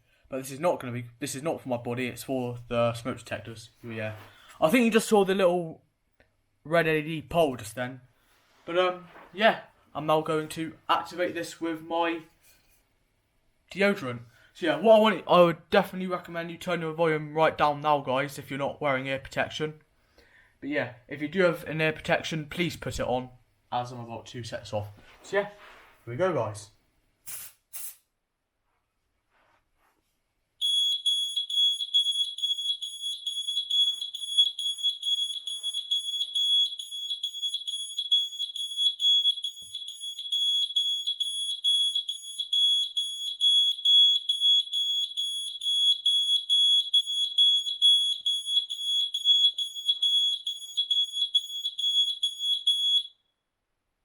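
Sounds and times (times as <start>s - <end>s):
smoke alarm shrill tone: 30.6s - 53.4s.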